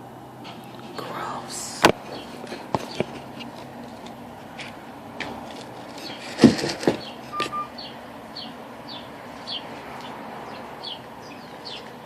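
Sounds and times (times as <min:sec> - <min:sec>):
small bird chirping: 0:07.0 - 0:12.0.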